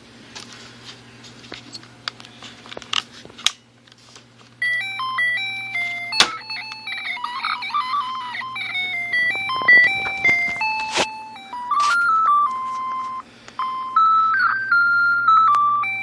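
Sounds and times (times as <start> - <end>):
alarm clock electronic beeping melody: 4.6 - 16.0.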